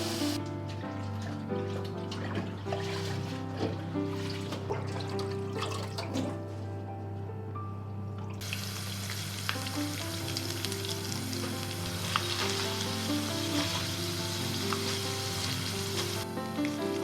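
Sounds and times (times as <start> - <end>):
food sizzling in a pan: 0.0 - 0.4, 8.4 - 17.0
soft background music: 0.0 - 17.0.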